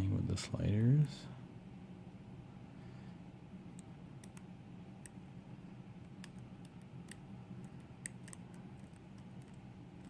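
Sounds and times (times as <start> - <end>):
low hum: 0.0 - 10.0.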